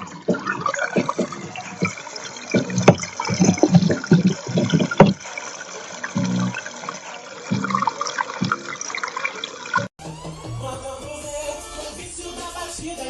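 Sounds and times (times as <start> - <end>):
water churning in washing machine: 0.0 - 9.9.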